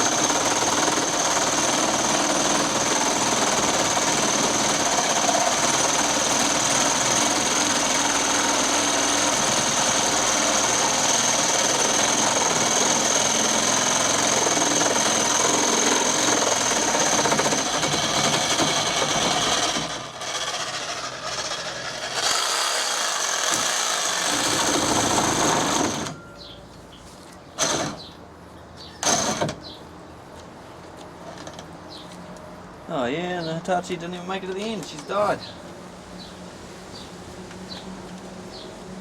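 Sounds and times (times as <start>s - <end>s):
reciprocating saw cutting wood: 0.0s - 26.2s.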